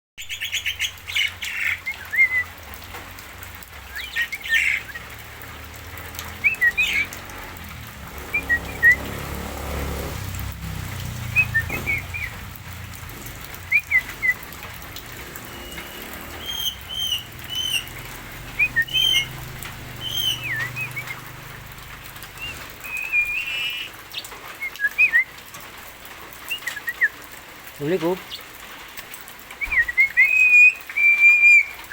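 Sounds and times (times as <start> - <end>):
myna bird calling: 3.9 - 5.1, 6.4 - 7.2, 13.6 - 25.2.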